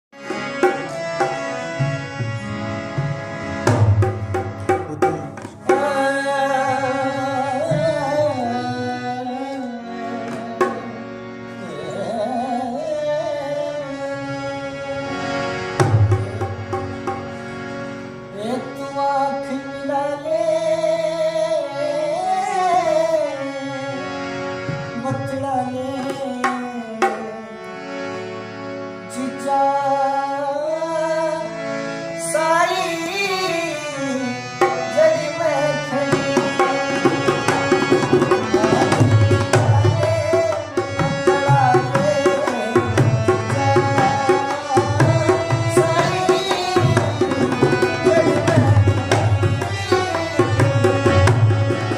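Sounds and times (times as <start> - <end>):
person singing folk song: 4.9 - 14.7, 38.4 - 50.7.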